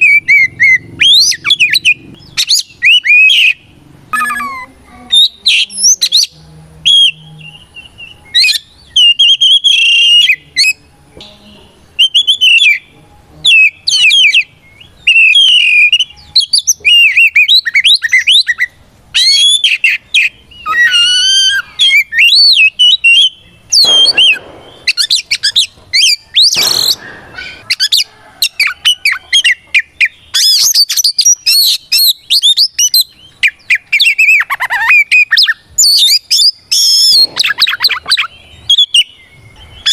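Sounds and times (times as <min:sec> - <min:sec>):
bird singing whistles and trills: 0:00.0 - 0:39.9
short harsh bird rasps: 0:15.1 - 0:39.1.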